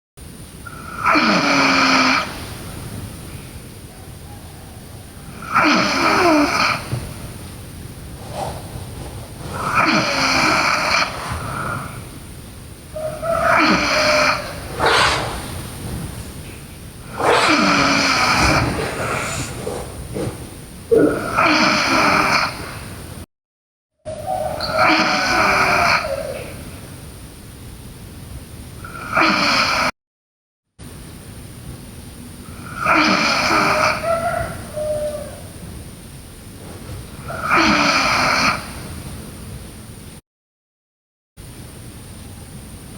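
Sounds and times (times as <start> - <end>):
quiet breathing: 3.2 - 22.9
soft whistling breath out: 8.1 - 12.2, 13.0 - 20.6.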